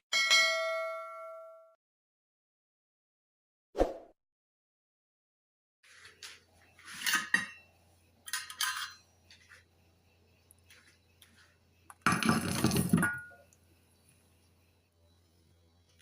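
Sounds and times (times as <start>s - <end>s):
utensils clattering against a pan: 6.0s - 9.6s.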